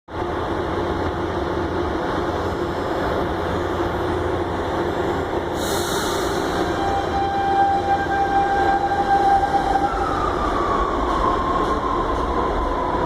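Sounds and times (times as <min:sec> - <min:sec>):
electric train humming: 0:00.1 - 0:13.0
air hiss: 0:05.6 - 0:06.7.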